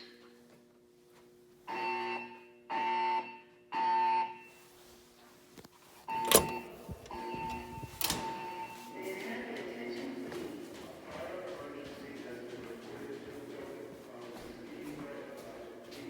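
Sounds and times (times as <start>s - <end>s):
fire alarm beeps: 1.7s - 4.6s, 6.1s - 9.1s.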